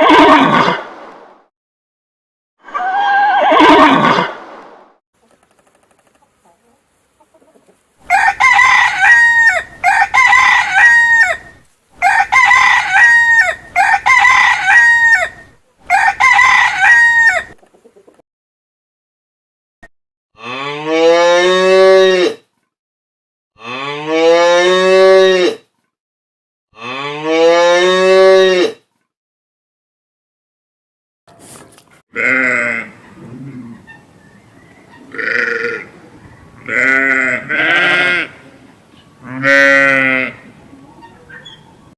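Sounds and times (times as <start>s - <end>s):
rooster crowing: 8.0s - 17.6s
cow mooing: 26.8s - 28.7s, 39.2s - 40.4s.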